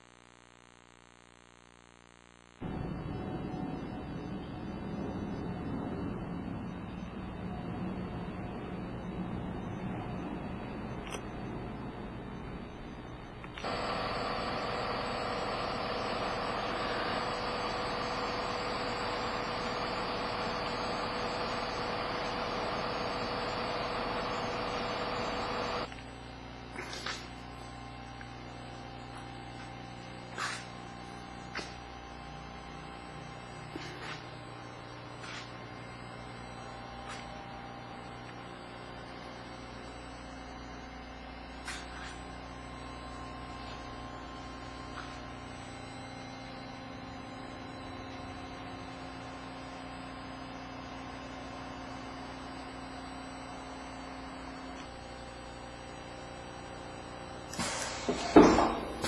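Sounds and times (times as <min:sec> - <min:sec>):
quiet steady hum: 0:00.0 - 0:57.2
engraving machine whirring: 0:13.5 - 0:25.9.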